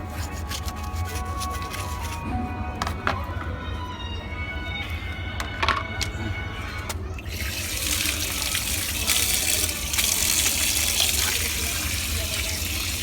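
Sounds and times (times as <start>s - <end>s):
tap water running and splashing: 7.3s - 13.0s.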